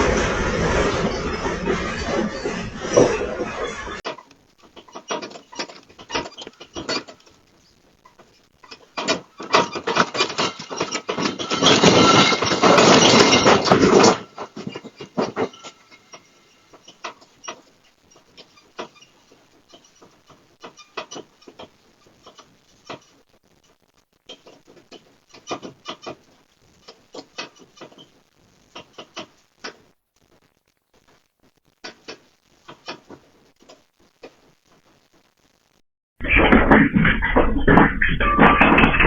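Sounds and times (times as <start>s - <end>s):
objects rattling and clattering: 0.0s - 7.4s, 8.1s - 23.1s, 36.3s - 39.0s
scattered knocks and clicks: 0.0s - 30.4s, 31.0s - 34.4s, 36.3s - 39.0s.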